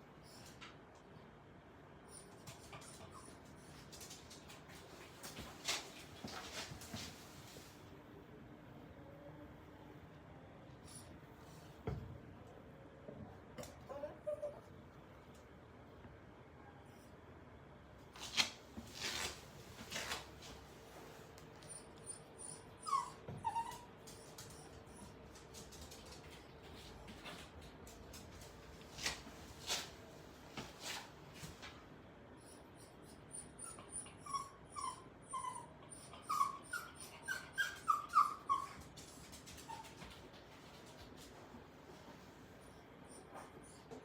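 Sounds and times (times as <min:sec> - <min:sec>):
puppy scuffling rustles: 0:03.8 - 0:07.9, 0:18.2 - 0:21.6, 0:23.7 - 0:31.8
puppy high squeaks: 0:21.7 - 0:24.8, 0:33.0 - 0:38.8.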